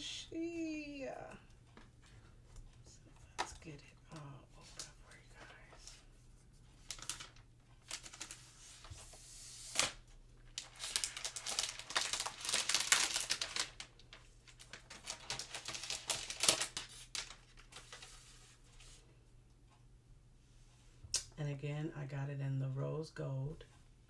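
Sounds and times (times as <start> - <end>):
packaging crinkling and tearing: 6.8 - 18.3.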